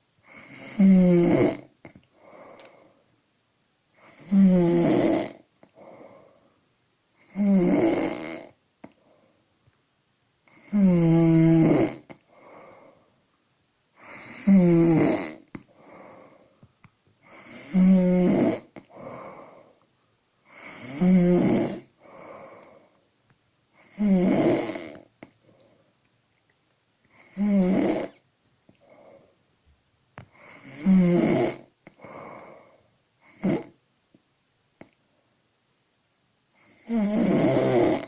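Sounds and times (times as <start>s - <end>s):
woman snoring: 0.2s - 2.7s, 4.0s - 6.2s, 7.2s - 8.6s, 10.5s - 12.9s, 14.0s - 16.4s, 17.2s - 19.8s, 20.5s - 22.8s, 23.8s - 25.1s, 27.1s - 28.2s, 30.3s - 33.8s, 36.6s - 38.0s
soft breath sounds: 1.8s - 3.2s, 5.6s - 6.7s, 8.8s - 9.6s, 12.0s - 14.5s, 15.3s - 17.9s, 18.6s - 21.0s, 21.6s - 23.2s, 25.2s - 26.1s, 28.1s - 29.5s, 31.8s - 33.8s.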